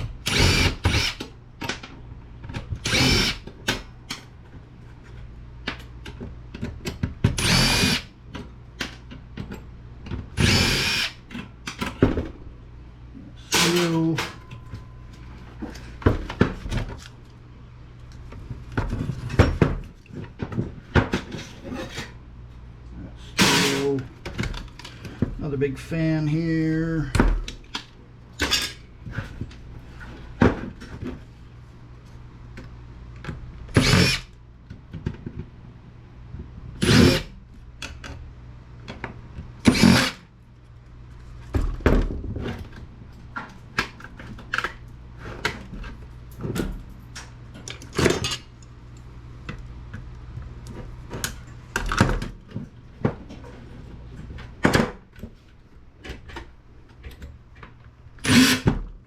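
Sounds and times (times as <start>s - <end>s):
power drill-driver bursts: 0.2s - 1.3s, 2.8s - 3.4s, 7.4s - 8.1s, 10.4s - 11.2s, 13.5s - 14.1s, 23.4s - 24.0s, 33.8s - 34.3s, 36.8s - 37.3s, 39.6s - 40.2s, 58.2s - 58.7s.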